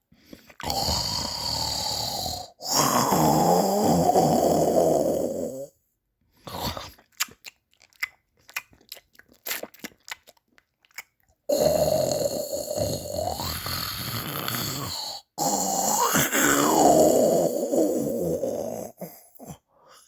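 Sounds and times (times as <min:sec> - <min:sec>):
loud snoring: 0:00.6 - 0:05.8, 0:11.5 - 0:19.6.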